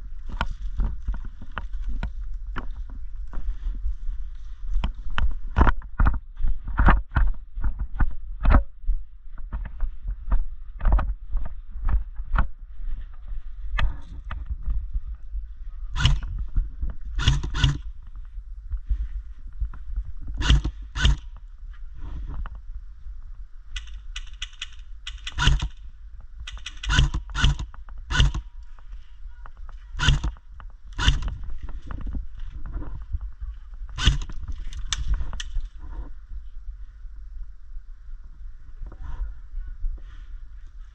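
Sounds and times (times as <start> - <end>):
wind rumble on microphone: 0.0 - 40.9
camera handling noise: 23.8 - 25.8, 26.5 - 28.5, 34.0 - 35.7.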